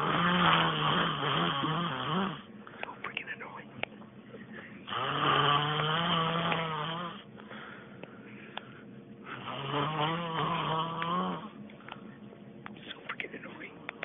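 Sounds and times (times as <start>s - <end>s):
person snoring: 0.0s - 2.5s, 4.8s - 7.2s, 9.3s - 11.6s.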